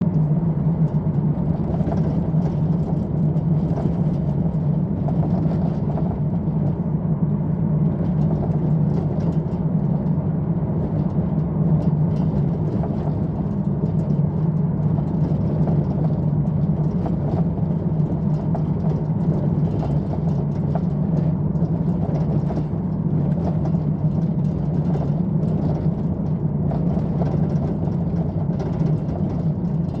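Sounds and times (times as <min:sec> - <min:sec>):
van road and engine drone: 0:00.0 - 0:30.0.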